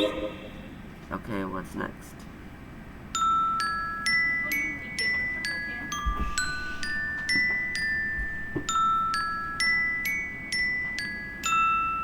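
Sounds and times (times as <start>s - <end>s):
phone ringtone with struck notes: 0.0s - 0.6s.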